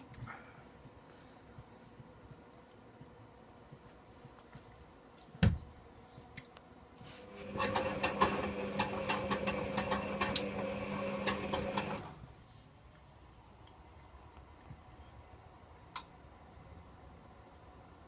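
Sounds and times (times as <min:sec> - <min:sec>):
washing machine drum motor: 0:07.2 - 0:12.2.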